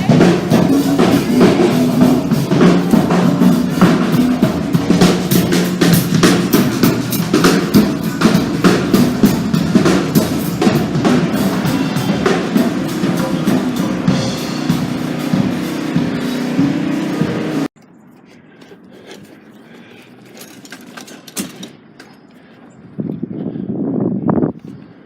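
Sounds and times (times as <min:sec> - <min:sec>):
bass line: 0:00.0 - 0:17.7
drum kit beat: 0:00.0 - 0:17.7
live rock band playing: 0:00.0 - 0:17.7.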